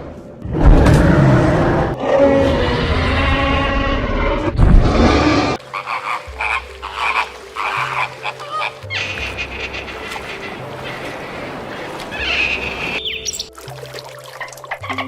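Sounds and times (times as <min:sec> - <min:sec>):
short croaking calls: 0:05.6 - 0:13.5.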